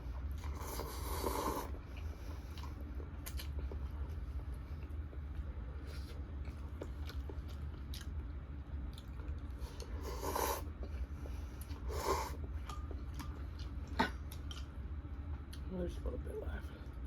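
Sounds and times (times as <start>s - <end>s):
steady low hum: 0.0s - 17.0s
noodle slurps: 0.5s - 1.8s, 10.0s - 10.7s
chewing and wet mouth clicks: 2.5s - 3.8s, 6.4s - 8.2s, 8.8s - 9.9s, 12.6s - 14.7s.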